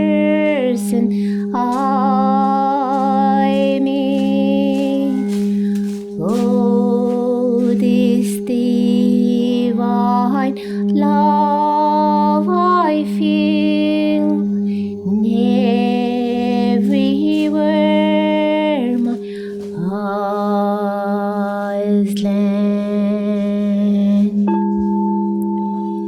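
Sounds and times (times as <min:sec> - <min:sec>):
wordless singing in long notes: 0:00.0 - 0:23.3
steady low drone: 0:00.0 - 0:26.0.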